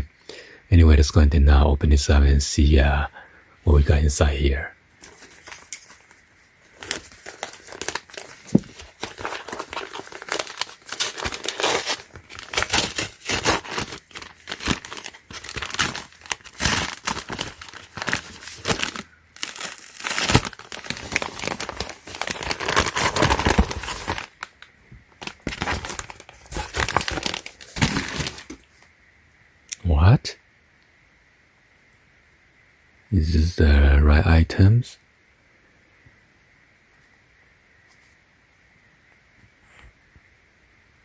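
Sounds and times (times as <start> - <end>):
packaging torn open and crinkled: 5.0 - 28.7.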